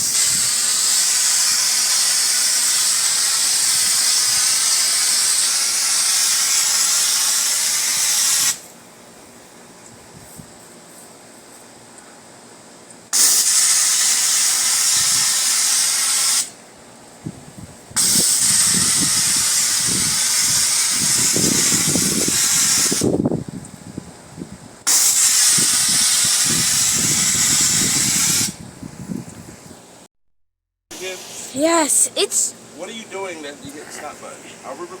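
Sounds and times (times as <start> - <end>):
pressure washer spraying water: 0.0 - 8.6, 13.2 - 16.6, 18.0 - 23.0, 24.9 - 28.6.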